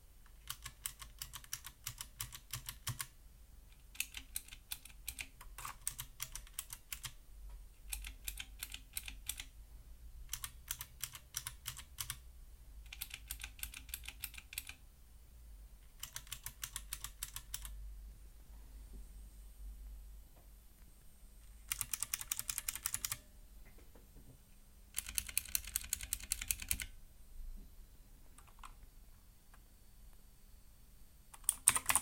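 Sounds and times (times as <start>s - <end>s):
mechanical keyboard key clicks: 0.4s - 3.1s, 10.3s - 12.2s, 12.9s - 14.8s, 21.7s - 23.2s, 25.0s - 26.9s.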